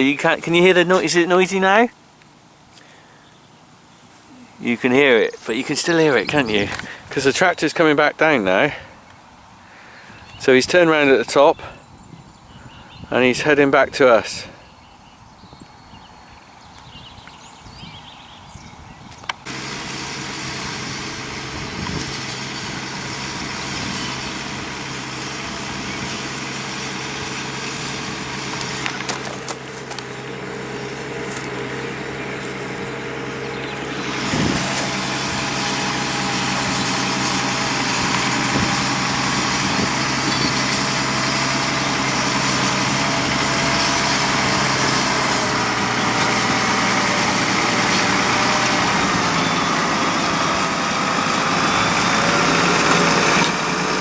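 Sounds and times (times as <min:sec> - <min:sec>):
tractor engine running: 0:00.0 - 0:03.0, 0:03.7 - 0:09.6, 0:19.3 - 0:54.0.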